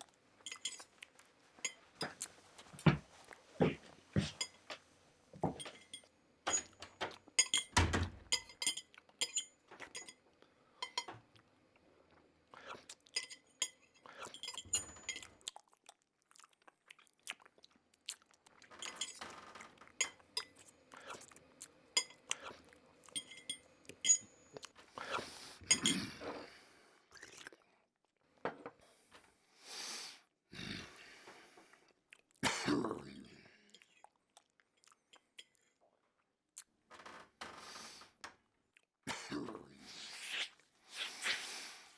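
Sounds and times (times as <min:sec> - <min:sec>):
chewing: 0:00.0 - 0:04.8, 0:08.8 - 0:25.9, 0:27.1 - 0:27.8, 0:33.6 - 0:35.8
crockery and cutlery clinking: 0:00.4 - 0:00.9, 0:03.6 - 0:04.8, 0:05.4 - 0:10.2, 0:10.8 - 0:11.2, 0:13.1 - 0:15.4, 0:18.8 - 0:20.7, 0:23.0 - 0:24.7, 0:25.7 - 0:26.3.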